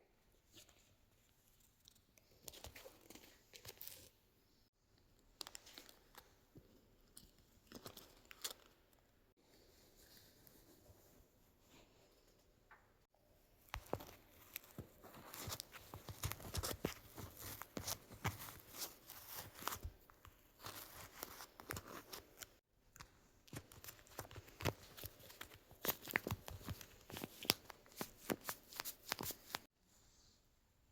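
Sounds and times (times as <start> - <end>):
paper and tape crackling: 13.7 - 22.6, 23.5 - 29.7.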